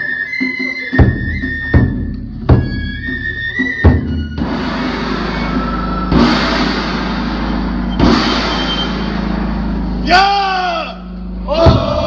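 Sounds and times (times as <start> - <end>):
bamboo flutes playing: 0.0 - 7.1
loud drum beats: 0.9 - 12.0.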